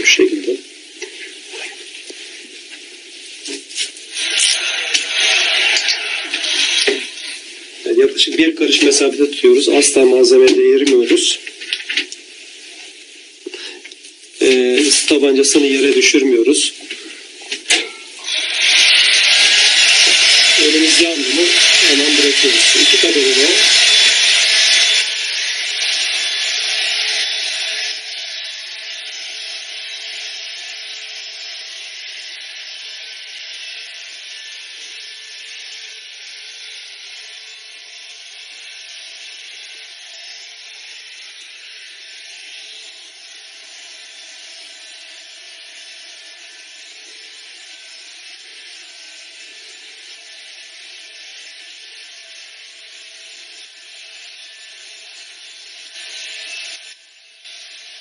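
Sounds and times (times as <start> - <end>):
heat gun blowing hot air: 1.0 - 9.0, 16.9 - 51.7.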